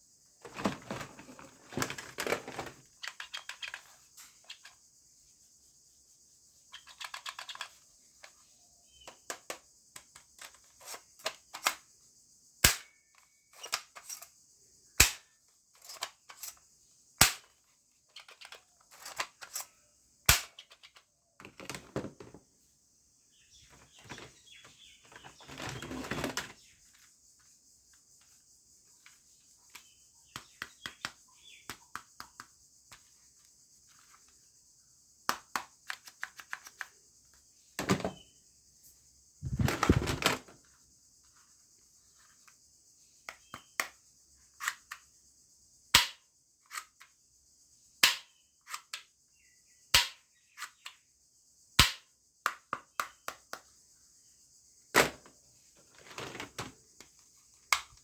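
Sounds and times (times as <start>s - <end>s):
toy gun shots: 15.0s - 15.2s, 20.3s - 20.6s.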